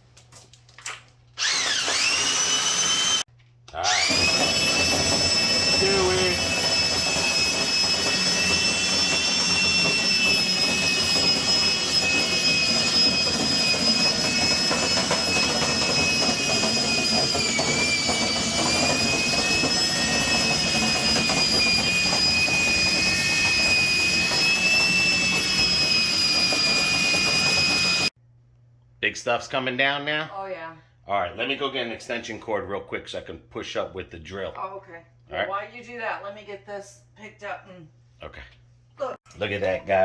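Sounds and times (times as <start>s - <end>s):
electric drill whining: 1.4s - 28.1s.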